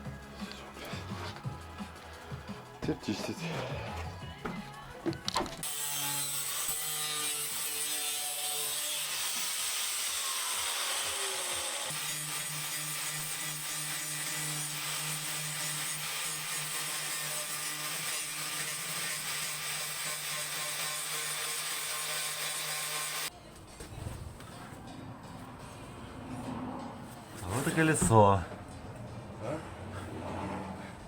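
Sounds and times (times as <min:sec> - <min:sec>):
power tool grinding metal: 0:05.6 - 0:23.3.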